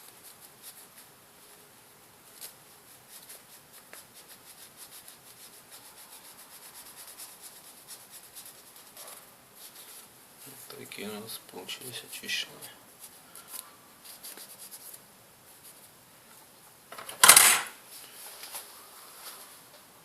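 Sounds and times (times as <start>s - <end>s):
faint wiping strokes: 0.0s - 16.0s.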